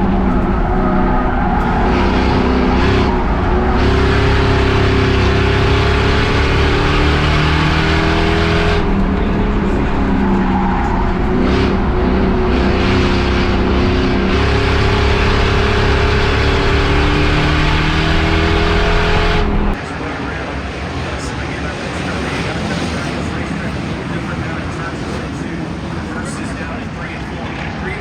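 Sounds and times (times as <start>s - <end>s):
race car engine running hard: 0.0s - 28.0s.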